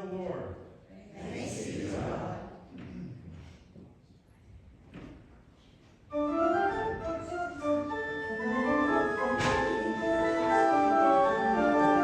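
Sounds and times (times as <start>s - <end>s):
organ music: 6.1s - 12.0s.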